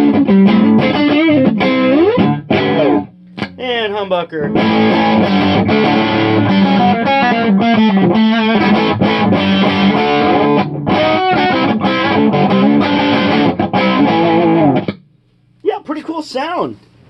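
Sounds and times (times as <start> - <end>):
distorted electric guitar: 0.0 - 15.1.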